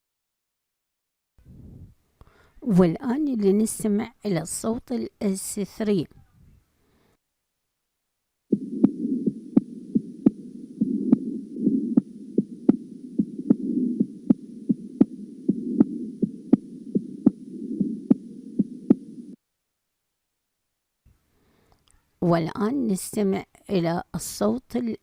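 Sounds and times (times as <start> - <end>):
heart beats: 8.5 - 19.4
low hiss: 8.5 - 19.4.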